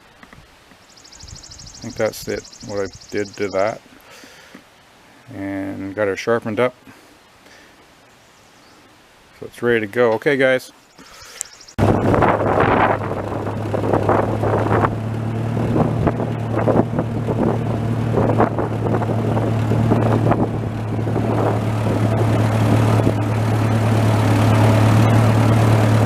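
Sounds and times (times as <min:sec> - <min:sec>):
tractor engine running: 0:11.8 - 0:26.0.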